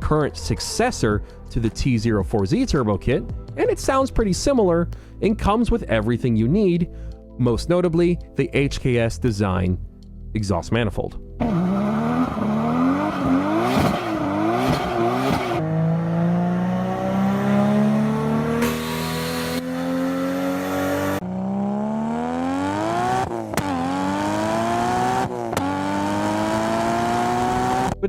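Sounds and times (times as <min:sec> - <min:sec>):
car engine revving and accelerating: 0:11.4 - 0:28.0.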